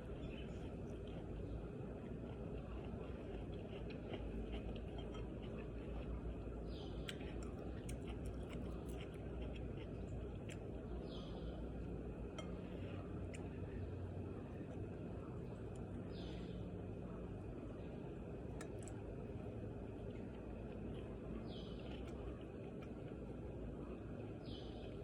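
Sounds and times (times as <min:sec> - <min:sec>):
chewing: 0:00.0 - 0:11.4, 0:18.5 - 0:23.3
low background rumble: 0:00.0 - 0:25.0.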